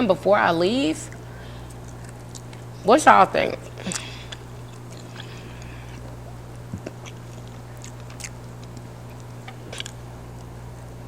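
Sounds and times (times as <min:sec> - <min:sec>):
steady low hum: 0:00.0 - 0:11.0
mouth clicks and chewing: 0:01.1 - 0:02.8, 0:03.6 - 0:10.5.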